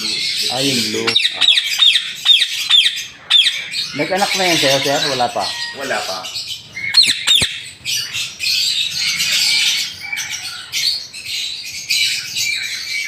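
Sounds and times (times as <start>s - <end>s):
parrots squawking: 0.0s - 13.0s.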